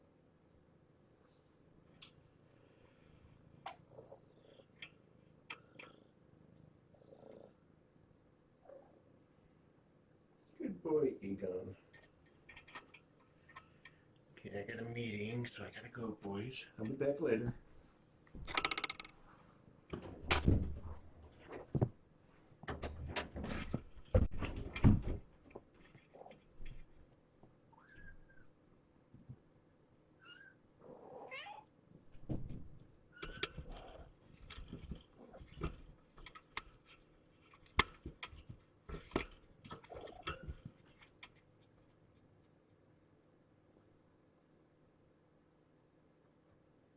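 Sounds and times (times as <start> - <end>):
kittens scratching and tapping: 11.8 - 14.1, 32.1 - 42.6.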